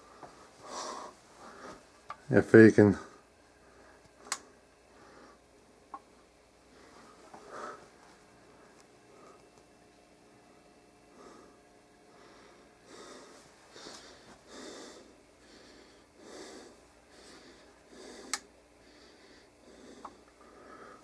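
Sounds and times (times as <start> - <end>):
soft breath-like rustling: 0.0 - 2.0, 6.6 - 9.5, 11.1 - 21.0.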